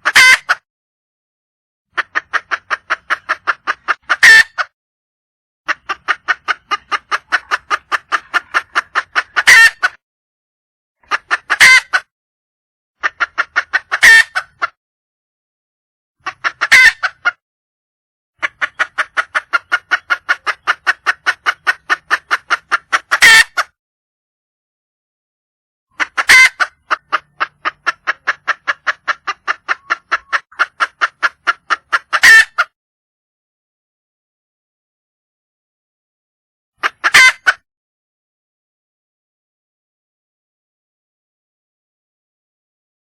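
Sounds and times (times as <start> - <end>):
hen clucking rapidly: 0.0 - 0.6, 1.9 - 4.7, 5.7 - 10.0, 11.0 - 12.1, 13.0 - 14.8, 16.2 - 17.4, 18.4 - 23.8, 25.9 - 32.7, 36.8 - 37.6.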